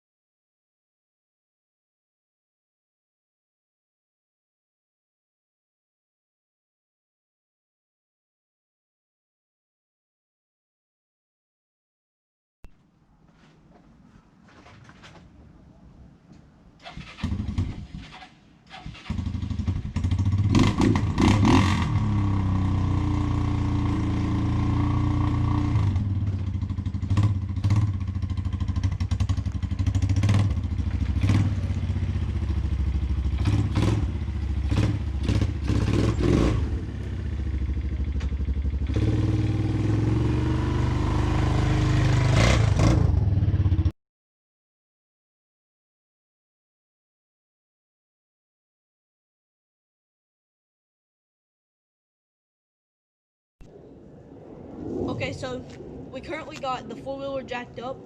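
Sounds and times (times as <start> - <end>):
atv engine starting and running: 16.8 - 43.9.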